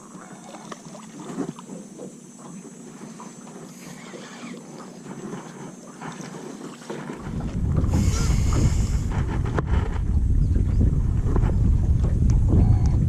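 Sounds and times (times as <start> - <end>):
wind buffeting microphone: 6.0 - 13.0
brief hiss: 7.9 - 9.1.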